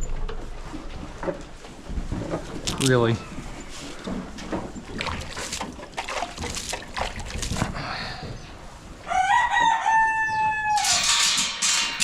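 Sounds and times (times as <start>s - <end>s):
soft knocks and rustles: 0.1s - 4.9s
rooster crowing: 9.0s - 11.1s.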